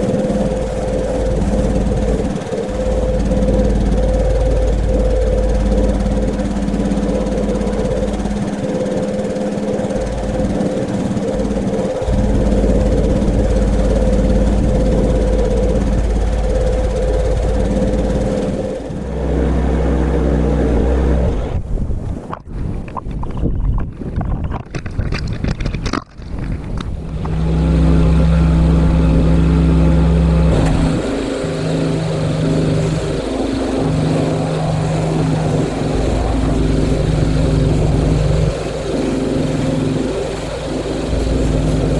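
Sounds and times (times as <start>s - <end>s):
pressure washer motor hum: 0.0s - 21.6s, 26.9s - 41.9s.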